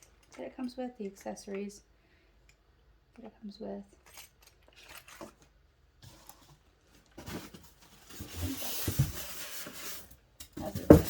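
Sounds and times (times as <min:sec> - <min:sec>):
packaging rustling and crinkling: 0:06.0 - 0:11.0.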